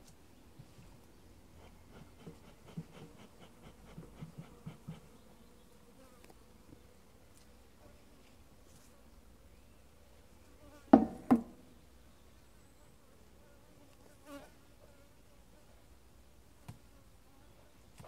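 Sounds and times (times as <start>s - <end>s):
sharp knocks: 11.0s - 11.5s.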